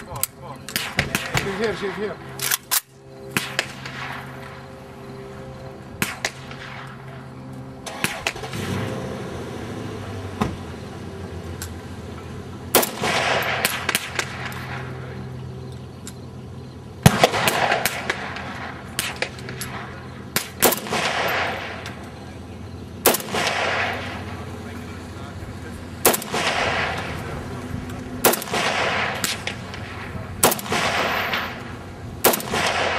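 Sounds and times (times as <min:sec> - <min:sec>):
rifle shots with echo: 0:00.7 - 0:04.6, 0:06.0 - 0:07.0, 0:07.8 - 0:08.5, 0:12.7 - 0:15.4, 0:17.0 - 0:22.2, 0:23.0 - 0:24.6, 0:26.0 - 0:27.5, 0:28.1 - 0:32.9.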